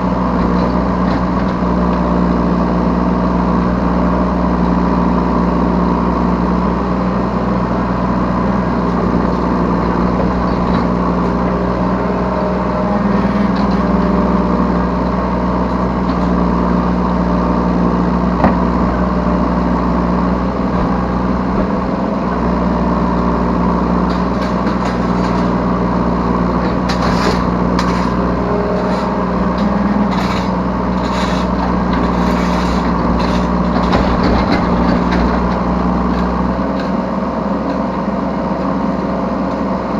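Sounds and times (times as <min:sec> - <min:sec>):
excavator diesel engine running: 0:00.0 - 0:39.9
clatters and scrapes: 0:08.9 - 0:14.4, 0:24.0 - 0:25.7, 0:26.6 - 0:37.1.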